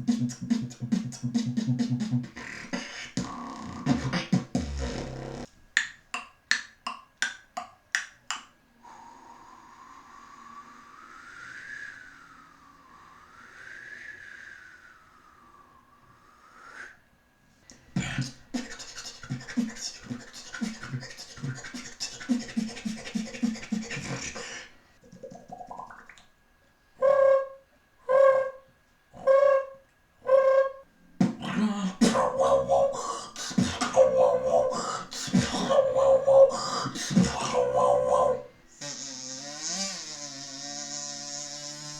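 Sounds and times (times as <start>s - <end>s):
person beatboxing: 0.0s - 5.5s, 17.7s - 26.1s, 31.2s - 41.9s.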